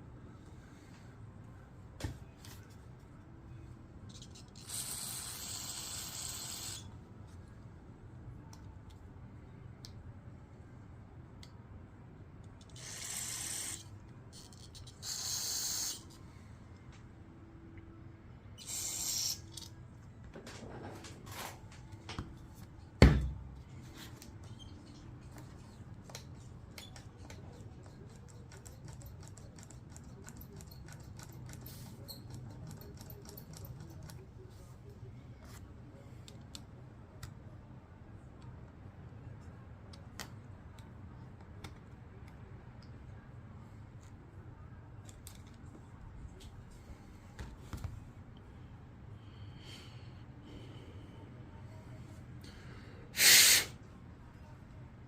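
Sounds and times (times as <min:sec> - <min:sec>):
small parts clicking: 0:12.4 - 0:16.1
compressed air blasts: 0:53.2 - 0:53.8.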